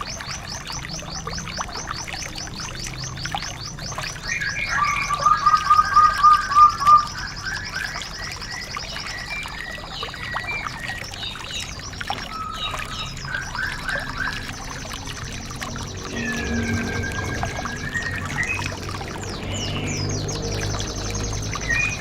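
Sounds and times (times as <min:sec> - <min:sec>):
soft bird chirps: 0:00.0 - 0:22.0
loud whistled bird notes: 0:04.2 - 0:11.4, 0:12.3 - 0:22.0.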